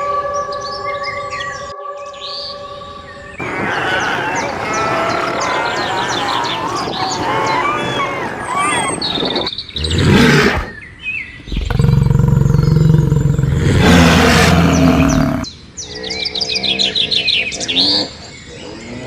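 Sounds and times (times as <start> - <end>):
large animal roaring: 3.4 - 10.8, 11.4 - 15.5
bird chirps and trills: 3.4 - 18.7.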